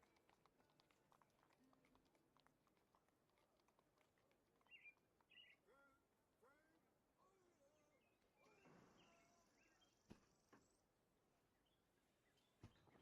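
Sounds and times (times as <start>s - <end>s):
faint bird chirps: 4.6s - 10.9s, 11.5s - 13.0s.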